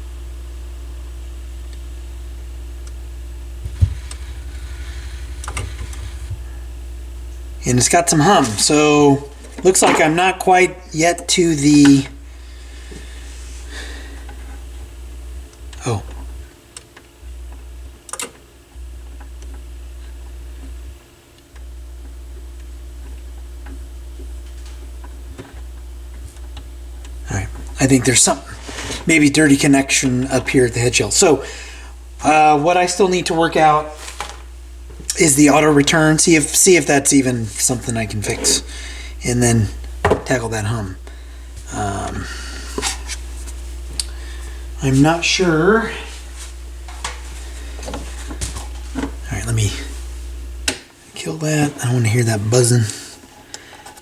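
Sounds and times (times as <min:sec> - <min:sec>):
low electrical hum: 0:00.0 - 0:54.0
rough pulsing buzz: 0:02.6 - 0:09.4
loud click: 0:03.6 - 0:06.7.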